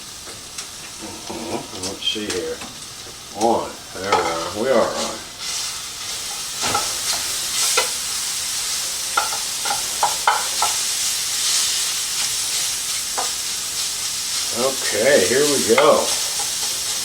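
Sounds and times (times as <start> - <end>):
beef sizzling in a skillet: 0.0 - 17.0
utensil scraping and tapping pan: 9.2 - 10.8.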